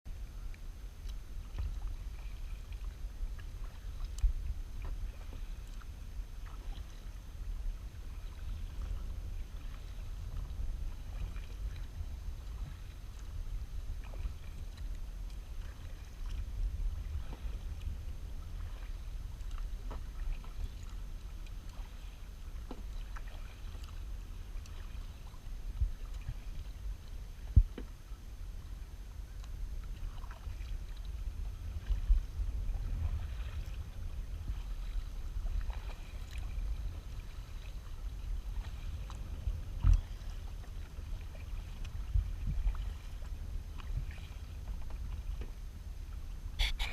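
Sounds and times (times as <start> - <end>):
light water splashing: 0.2 - 46.9
low rumble: 28.6 - 46.9.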